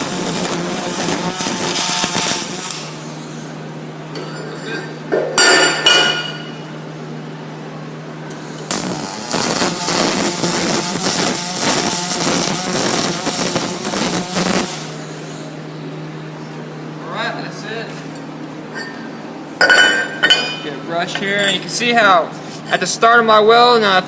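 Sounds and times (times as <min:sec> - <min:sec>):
welding arc crackling hiss: 0:00.0 - 0:03.6, 0:08.3 - 0:15.6
steady low hum: 0:00.0 - 0:24.0.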